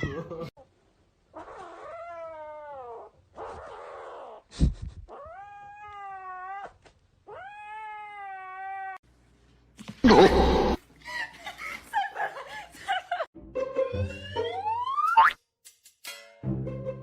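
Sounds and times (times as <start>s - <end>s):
cat yowling: 5.1s - 9.0s.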